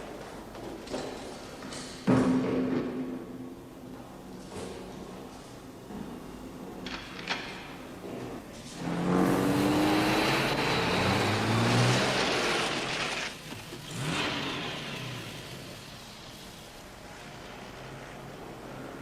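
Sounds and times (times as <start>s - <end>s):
car engine accelerating: 8.7s - 19.0s.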